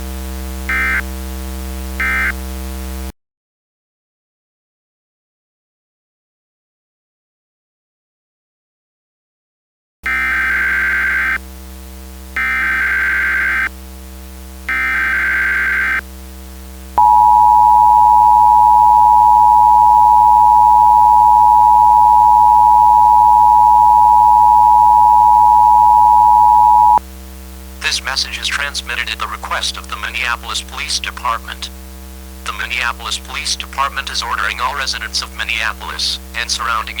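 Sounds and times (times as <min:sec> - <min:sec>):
two-tone alert signal: 0:17.0 - 0:27.0
low electrical hum: 0:17.0 - 0:37.0.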